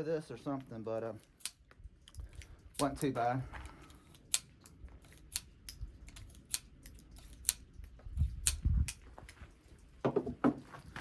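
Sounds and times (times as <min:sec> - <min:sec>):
sharp light clicks: 0:08.4 - 0:09.0.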